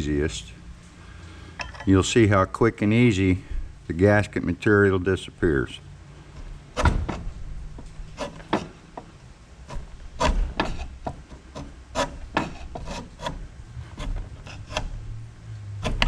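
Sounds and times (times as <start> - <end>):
scraper scraping gasket off metal: 8.1 - 8.8, 9.6 - 15.0.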